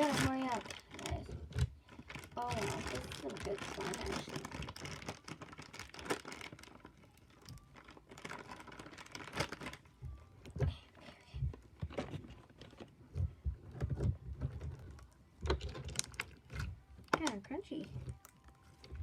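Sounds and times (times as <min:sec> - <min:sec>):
slime squishing with crackling beads: 0:00.0 - 0:19.0.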